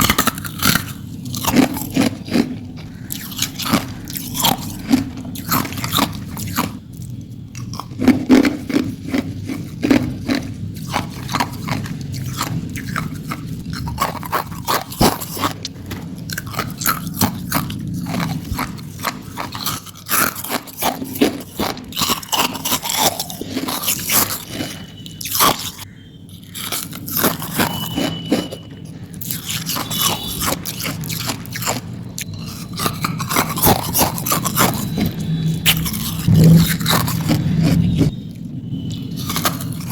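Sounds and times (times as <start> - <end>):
ice crunching between teeth: 0.0 - 25.8, 26.4 - 39.9
chewing: 0.0 - 39.9.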